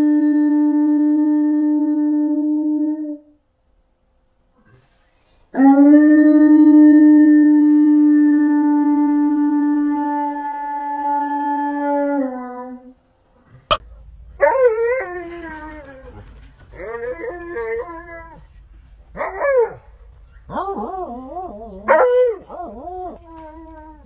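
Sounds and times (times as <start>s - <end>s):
husky howling and yowling: 5.6s - 13.0s, 14.4s - 24.0s.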